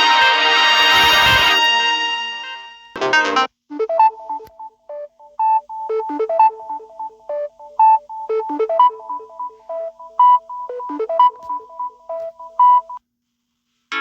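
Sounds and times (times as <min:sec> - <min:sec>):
synthesised ringtone melody: 0:00.0 - 0:01.8, 0:03.8 - 0:13.0.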